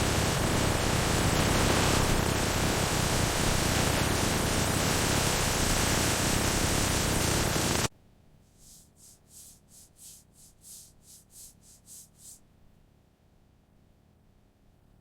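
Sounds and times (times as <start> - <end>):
loud steady hiss: 0.0 - 7.9, 8.5 - 12.4
faint high hissing puffs: 8.5 - 12.4.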